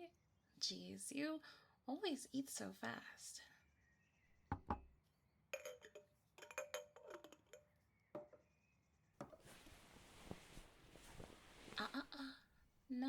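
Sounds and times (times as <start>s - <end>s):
dishes and glassware clinking: 5.6s - 7.6s
soft rustling hiss: 9.3s - 13.0s.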